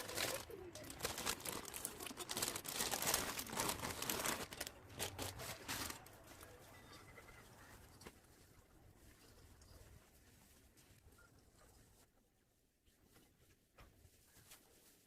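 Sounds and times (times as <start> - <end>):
packaging crinkling: 0.0 - 6.3.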